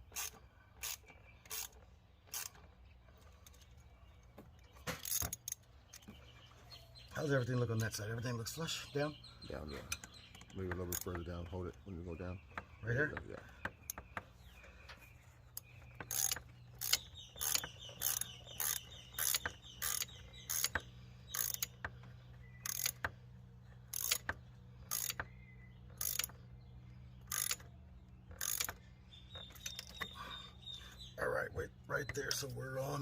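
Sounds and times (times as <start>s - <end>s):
ratchet wrench clicking: 0.0s - 2.7s, 5.0s - 5.6s, 15.6s - 25.3s, 25.9s - 26.4s, 27.2s - 27.7s, 28.3s - 28.8s, 29.4s - 30.0s.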